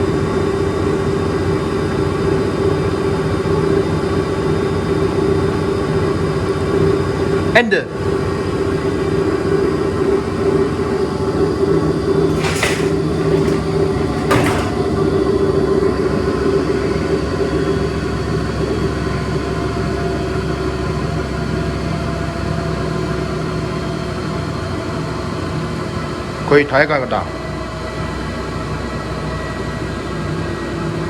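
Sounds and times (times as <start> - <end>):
washing machine motor hum: 11.9 - 16.9.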